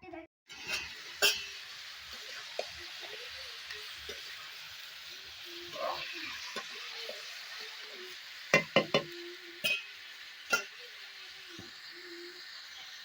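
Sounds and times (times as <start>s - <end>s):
food sizzling in hot oil: 0.5s - 13.0s
spoon knocking against pan: 8.5s - 9.9s.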